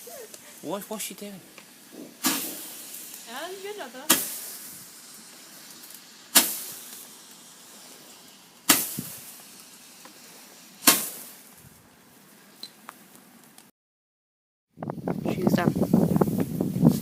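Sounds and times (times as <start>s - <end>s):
firework bangs: 0.0s - 11.8s.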